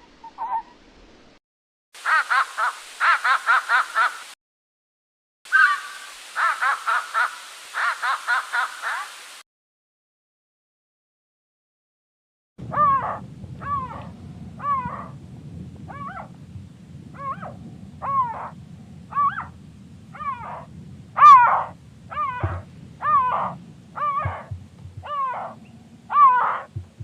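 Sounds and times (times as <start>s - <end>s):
slowed-down bird calls: 17.2s - 27.0s.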